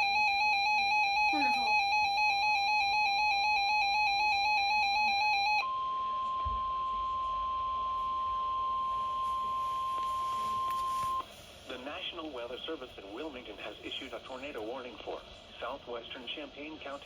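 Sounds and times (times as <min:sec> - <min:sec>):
steady high alarm tone: 0:00.0 - 0:11.2.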